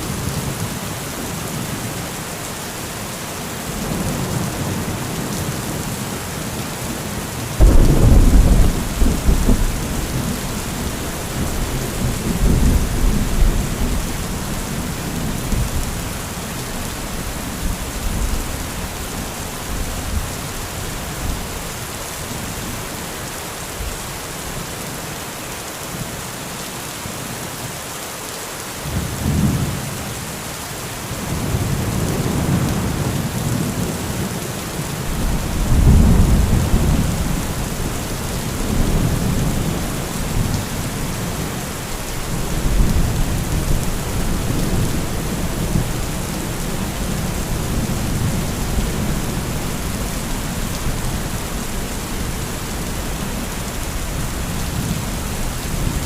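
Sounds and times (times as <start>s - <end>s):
heavy rain falling: 0.0s - 56.0s
rolling thunder: 7.6s - 16.1s, 35.2s - 51.4s.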